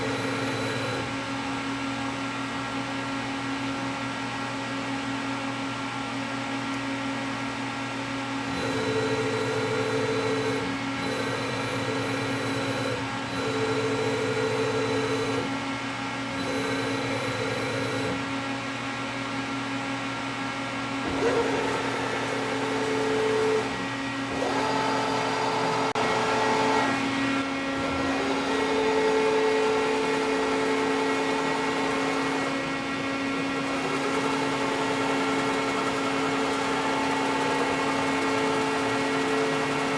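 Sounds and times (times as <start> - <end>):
lathe motors humming: 0.0 - 4.4, 20.5 - 39.9
motor whine: 0.0 - 4.4, 6.8 - 39.9.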